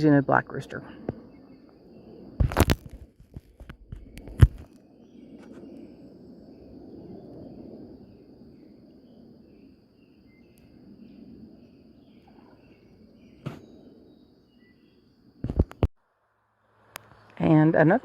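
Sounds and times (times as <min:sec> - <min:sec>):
high insect drone: 0:03.3 - 0:15.4.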